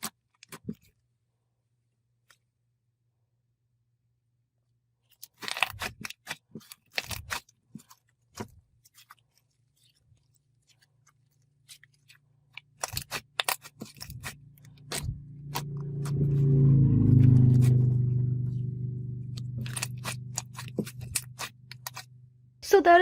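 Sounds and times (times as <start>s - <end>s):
slime squished by hand: 5.1s - 16.2s, 19.2s - 22.2s.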